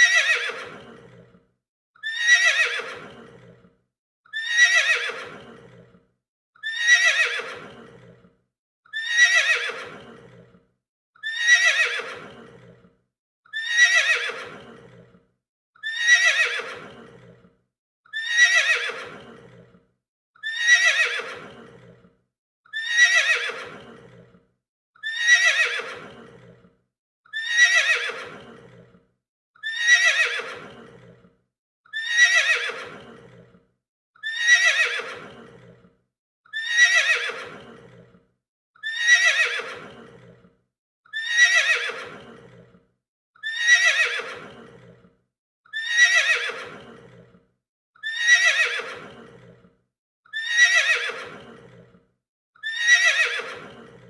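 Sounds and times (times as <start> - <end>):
horse neighing: 0.0 - 1.3, 2.0 - 3.6, 4.4 - 5.9, 6.6 - 8.2, 9.0 - 10.5, 11.2 - 12.8, 13.6 - 15.1, 15.8 - 17.4, 18.2 - 19.7, 20.4 - 22.0, 22.8 - 24.3, 25.0 - 26.6, 27.4 - 28.9, 29.6 - 31.2, 32.0 - 33.5, 34.3 - 35.8, 36.6 - 38.1, 38.8 - 40.4, 41.2 - 42.7, 43.5 - 45.0, 45.8 - 47.3, 48.1 - 49.6, 50.4 - 51.9, 52.7 - 54.0.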